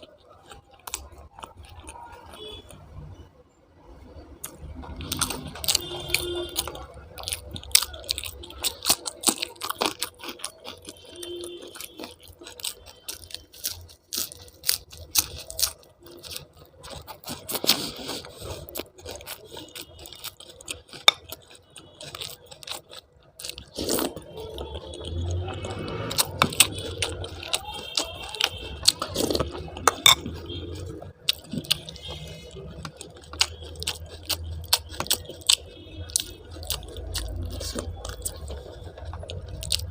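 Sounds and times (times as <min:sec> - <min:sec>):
chewing and crunching: 0:00.0 - 0:02.8, 0:04.1 - 0:39.9
dishes and utensils clinking: 0:29.0 - 0:30.5.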